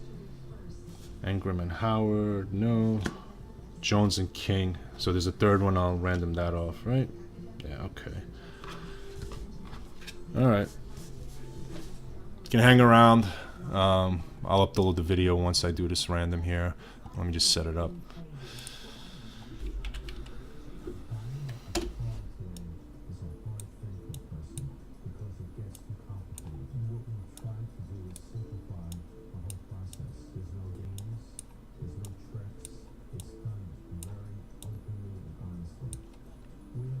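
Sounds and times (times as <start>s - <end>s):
faint background music: 0.0s - 37.0s.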